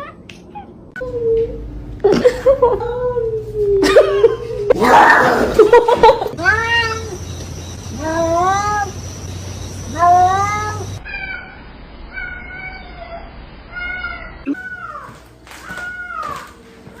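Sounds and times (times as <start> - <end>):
cat meowing: 6.4 - 7.2, 9.9 - 16.6.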